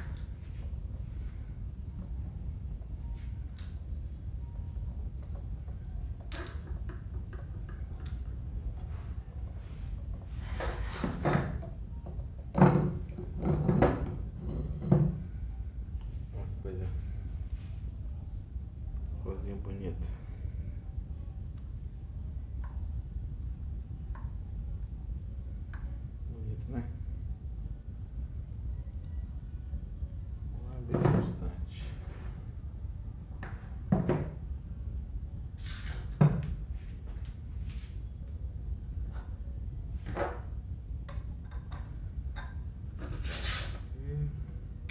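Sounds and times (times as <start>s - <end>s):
low steady hum: 0.0s - 44.9s
scraping and knocking handling noises: 4.7s - 15.4s, 41.1s - 43.9s.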